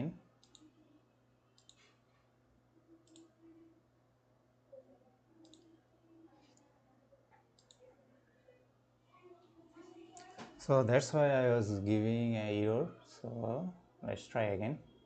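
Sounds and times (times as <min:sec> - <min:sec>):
faint low hum: 0:00.0 - 0:15.0
computer mouse clicks: 0:00.4 - 0:00.7, 0:01.6 - 0:02.0, 0:03.0 - 0:03.3, 0:05.4 - 0:05.7, 0:07.6 - 0:07.8.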